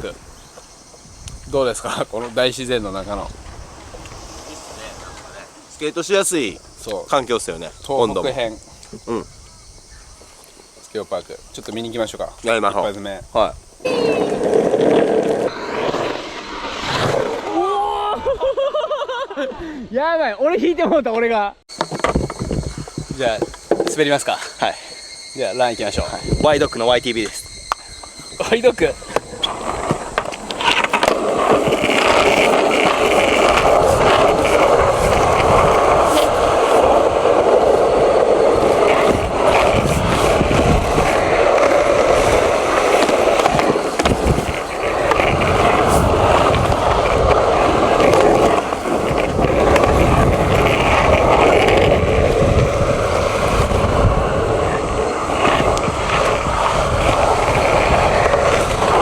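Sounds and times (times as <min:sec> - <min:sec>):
skateboard wheels rolling on concrete: 0:00.0 - 0:20.6, 0:21.7 - 0:59.0
skateboard clacks: 0:21.7 - 0:24.3, 0:29.0 - 0:59.0.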